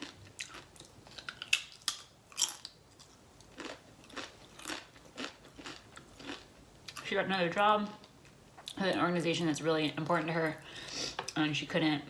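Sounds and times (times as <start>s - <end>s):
steady chewing: 2.3s - 7.0s.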